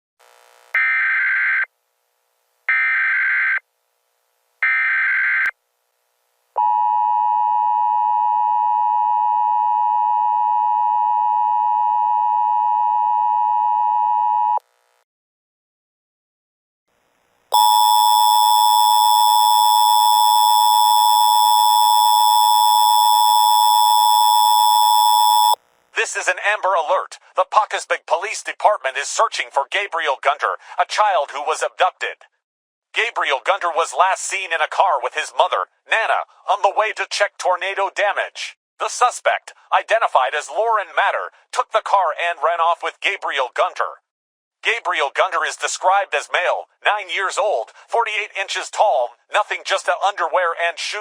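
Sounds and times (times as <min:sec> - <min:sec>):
harsh steady alert tone: 0:17.6 - 0:25.6
two-tone attention signal: 0:17.6 - 0:25.6.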